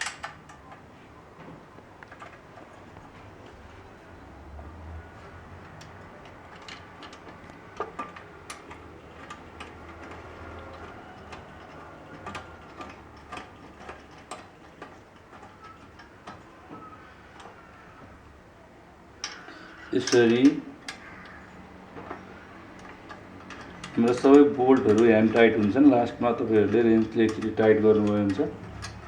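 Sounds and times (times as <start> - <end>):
small metallic clicks and taps: 5.6 - 18.1, 19.2 - 29.0.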